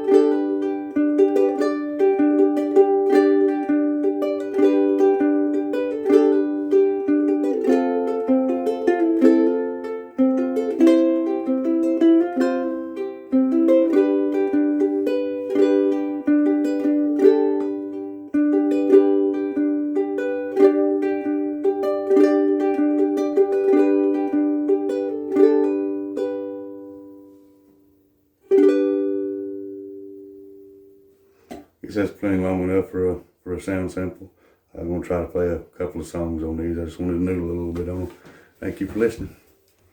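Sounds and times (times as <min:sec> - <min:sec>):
ukulele plucked notes and chords: 0:00.0 - 0:31.8.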